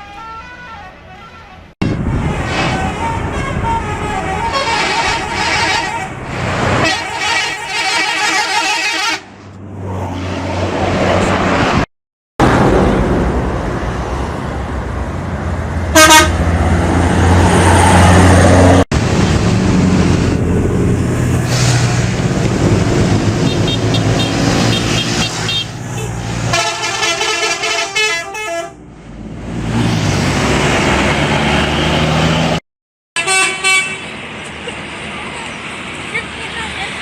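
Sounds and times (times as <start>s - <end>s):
multi-tone musical bus horn: 0.0s - 6.2s, 6.8s - 9.4s, 15.9s - 16.5s, 23.4s - 28.8s, 33.2s - 34.2s
loud horn blast: 0.0s - 9.4s, 15.9s - 16.6s, 23.4s - 28.8s, 33.2s - 34.1s
bus engine running: 0.0s - 32.6s, 33.2s - 37.0s.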